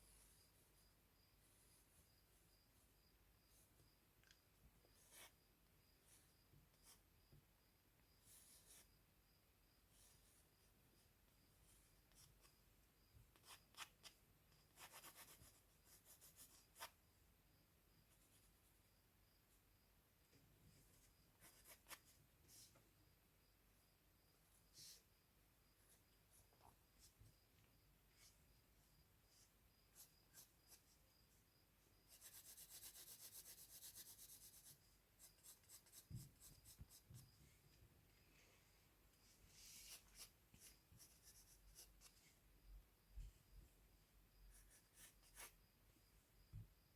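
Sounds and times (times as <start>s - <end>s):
drawing tool scratching on paper: 13.3s - 17.0s, 21.4s - 22.1s, 32.1s - 37.1s, 44.5s - 45.6s.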